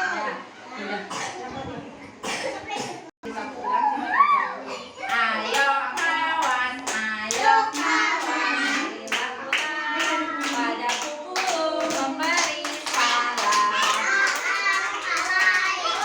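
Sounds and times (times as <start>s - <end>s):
children singing: 5.1s - 16.0s
rhythmic hand-clapping: 5.1s - 16.0s.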